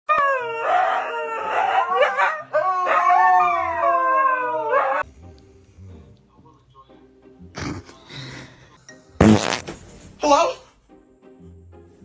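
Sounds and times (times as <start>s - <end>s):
dog howling: 0.1s - 5.0s.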